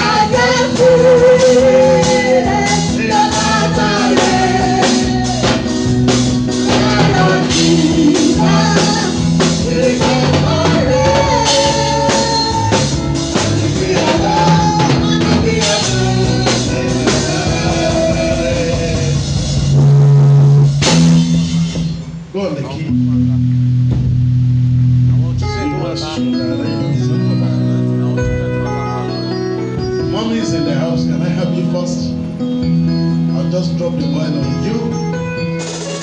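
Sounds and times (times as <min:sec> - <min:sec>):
gospel singing: 0:00.0 - 0:20.1
drum kit beat: 0:00.0 - 0:31.6, 0:35.2 - 0:36.0
guitar: 0:00.0 - 0:36.0.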